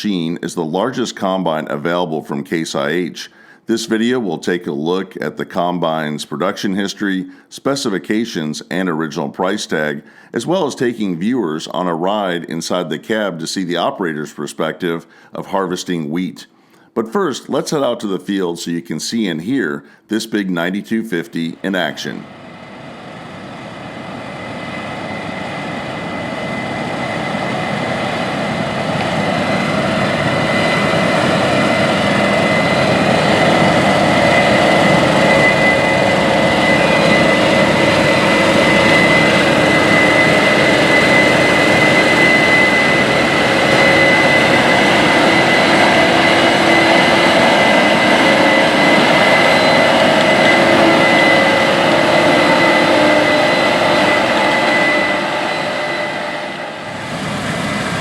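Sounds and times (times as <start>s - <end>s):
high machine whine: 21.4s - 58.0s
combine harvester running hard: 22.2s - 58.0s.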